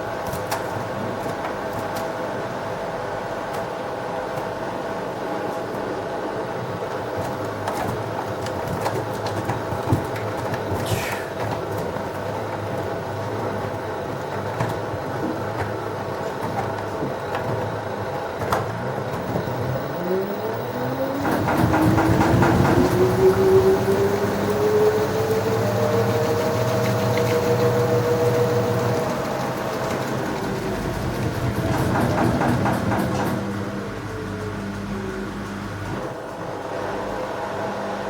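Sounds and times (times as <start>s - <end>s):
washing machine humming: 0.0s - 38.0s
washing machine drum knocking: 20.7s - 33.8s.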